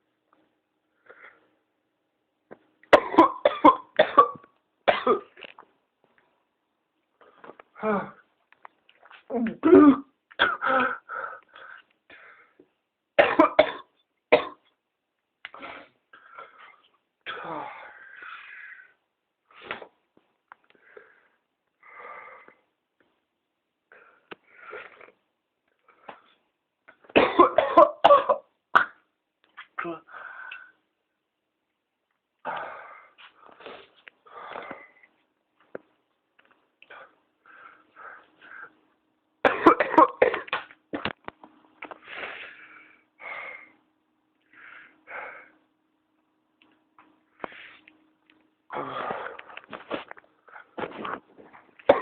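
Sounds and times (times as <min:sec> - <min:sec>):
person coughing harshly: 0:02.9 - 0:05.4, 0:09.6 - 0:11.1, 0:13.2 - 0:14.6, 0:27.1 - 0:29.1, 0:39.4 - 0:40.7.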